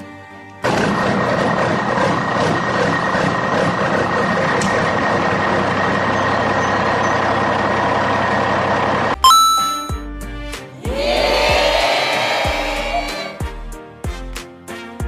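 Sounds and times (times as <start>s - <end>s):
vehicle engine running: 0.7s - 9.2s.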